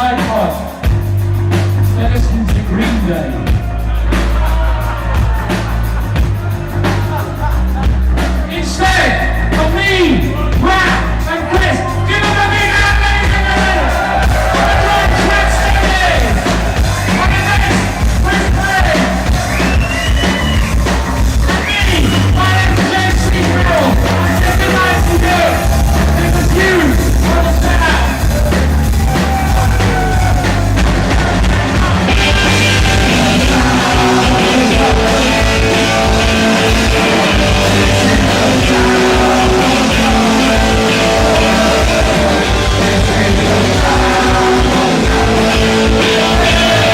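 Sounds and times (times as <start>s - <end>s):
punk rock band playing: 0.0s - 46.9s
person singing: 29.2s - 46.9s.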